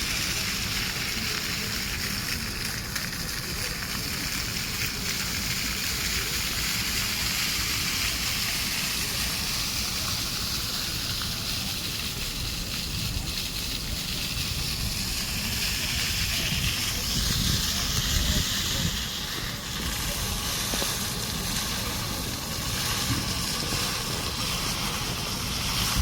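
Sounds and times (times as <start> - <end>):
fountain water splashing: 0.0 - 26.0.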